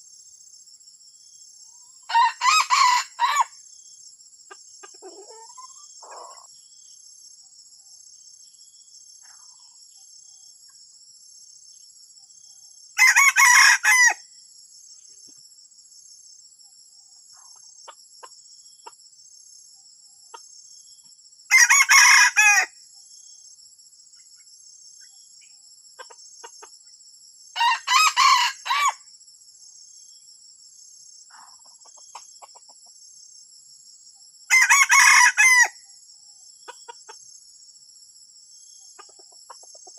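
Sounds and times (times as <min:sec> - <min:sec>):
rooster crowing: 0:02.1 - 0:03.6, 0:13.0 - 0:14.2, 0:21.5 - 0:22.8, 0:27.6 - 0:29.0, 0:34.5 - 0:35.8.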